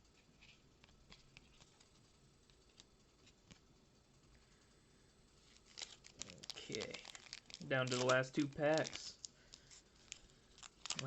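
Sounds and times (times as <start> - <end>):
trading cards ticking: 6.2 - 9.6.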